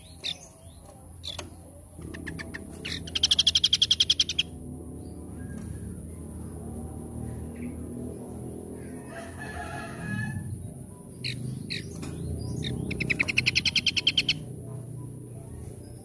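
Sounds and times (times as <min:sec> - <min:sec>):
songbird warbling and trilling: 0:00.0 - 0:06.6, 0:10.4 - 0:16.0.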